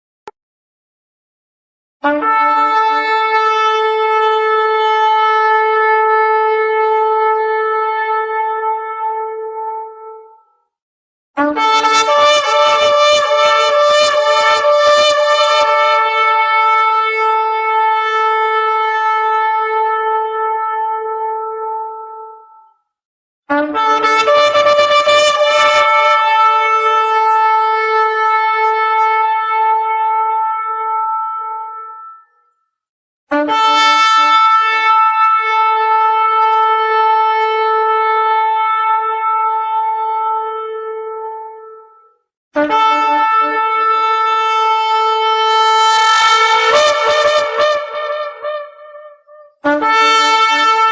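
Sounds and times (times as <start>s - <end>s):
long trumpet blast: 2.0s - 10.4s, 11.4s - 22.7s, 23.5s - 32.3s, 33.3s - 50.9s
ram's horn blast: 42.6s - 50.9s.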